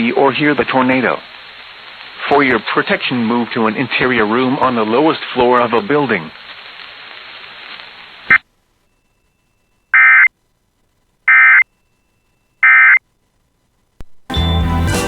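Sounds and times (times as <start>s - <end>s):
broadcast hiss: 0.0s - 14.3s
buzzy digital data tones: 8.3s - 10.3s, 11.3s - 13.0s.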